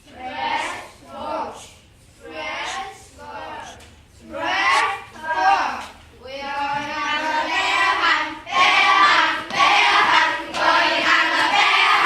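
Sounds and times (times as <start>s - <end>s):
children singing in unison: 6.6s - 12.0s.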